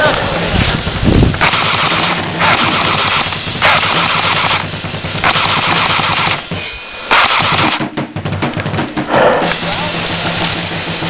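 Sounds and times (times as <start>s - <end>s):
airsoft gun firing full auto: 1.4s - 6.5s, 7.1s - 8.0s.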